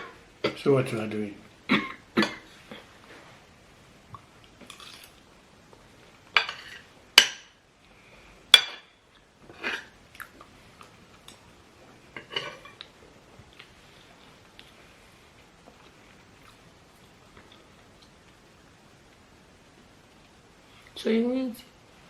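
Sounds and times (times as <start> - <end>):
cutlery clinking on plates: 6.4 - 7.5, 8.6 - 8.9, 12.2 - 12.8.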